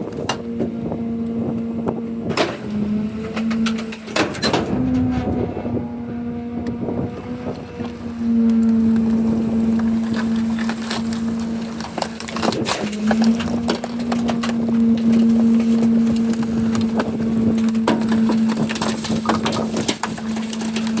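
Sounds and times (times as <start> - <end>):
hydraulic hum: 0.0 - 21.0
casing cracking and snapping: 7.8 - 21.0.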